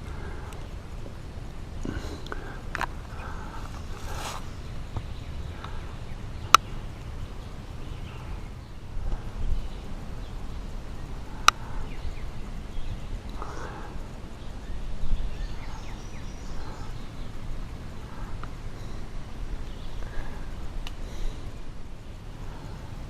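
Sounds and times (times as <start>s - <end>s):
wind rumble on microphone: 0.0s - 23.0s
faint bird chirps: 1.9s - 23.0s
rustling footsteps: 2.7s - 5.2s.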